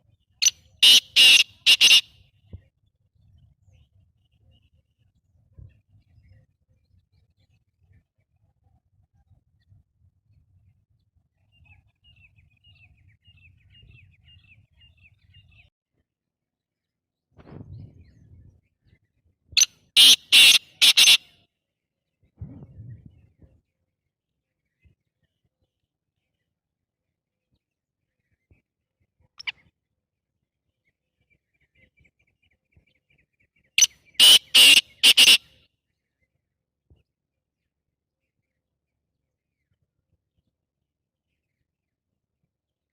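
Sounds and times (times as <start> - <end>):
francolin calling: 0.4 - 2.1, 20.0 - 21.2, 33.8 - 35.4
low rumble: 22.4 - 23.2.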